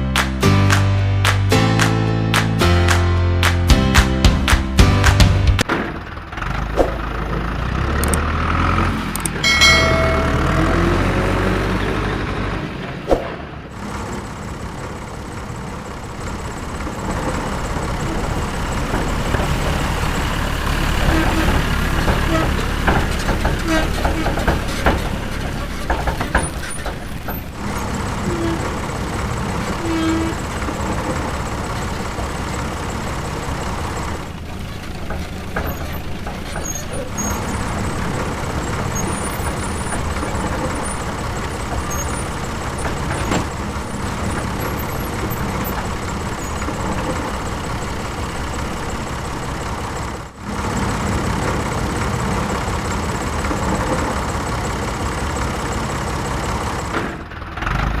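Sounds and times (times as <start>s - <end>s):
heavy vehicle engine running: 0.0s - 58.0s
short tones: 9.4s - 11.1s.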